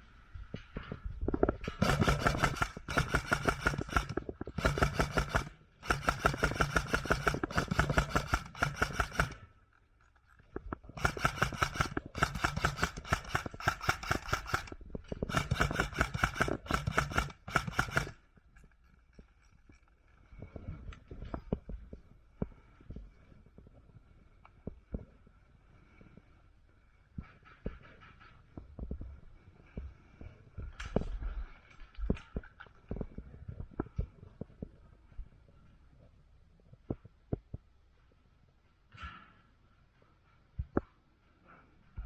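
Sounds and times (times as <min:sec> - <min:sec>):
airsoft gun full-auto bursts: 0:01.7 - 0:09.5, 0:10.9 - 0:18.2
gun motor whine: 0:01.8 - 0:09.5, 0:10.9 - 0:18.2.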